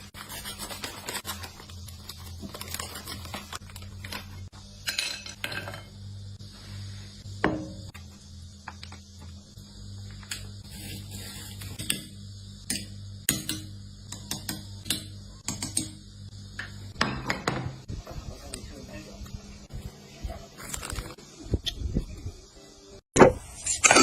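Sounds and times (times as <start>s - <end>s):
steady low hum: 0.0s - 23.6s
dishes and utensils clinking: 4.8s - 6.0s.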